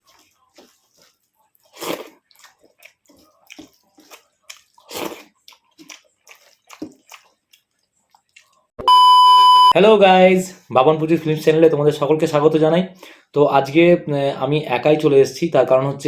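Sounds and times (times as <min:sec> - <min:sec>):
mouth chewing and smacking: 0:00.0 - 0:08.7.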